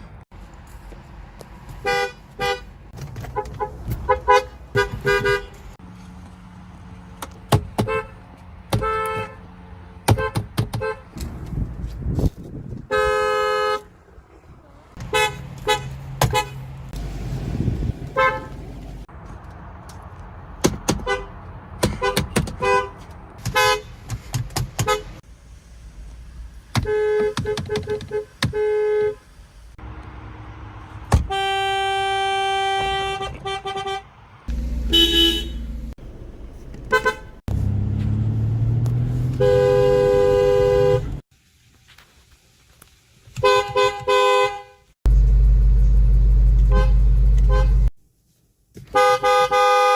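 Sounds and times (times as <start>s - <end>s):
engine and traffic rumble: 0.0s - 49.9s
car horns honking: 1.8s - 5.8s, 7.8s - 11.2s, 12.9s - 14.0s, 15.0s - 16.8s, 18.1s - 18.9s, 20.9s - 24.0s, 24.8s - 25.2s, 26.8s - 29.3s, 31.1s - 35.9s, 36.8s - 37.5s, 39.3s - 41.2s, 43.4s - 44.9s, 46.6s - 47.9s, 48.8s - 49.9s.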